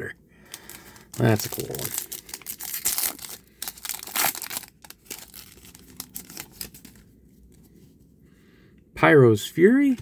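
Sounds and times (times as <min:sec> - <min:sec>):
plastic crinkling: 0:00.5 - 0:07.0
trading cards rustling: 0:00.5 - 0:07.1.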